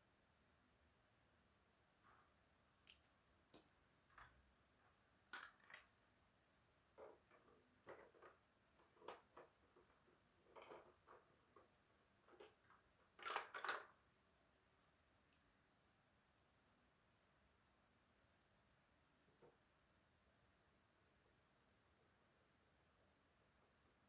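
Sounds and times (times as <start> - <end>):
small parts and tools clicking: 2.8 - 4.4, 5.3 - 6.0, 12.3 - 16.5.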